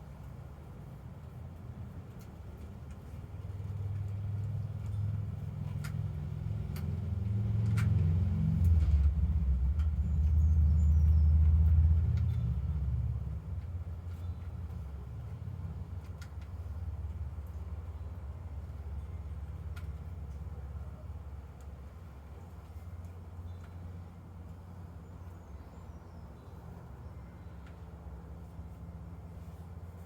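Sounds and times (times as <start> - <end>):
vehicle passing by: 3.5 - 16.0.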